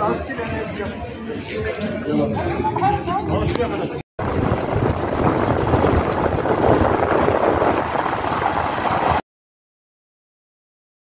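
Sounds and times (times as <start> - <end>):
wind buffeting microphone: 4.2 - 9.2.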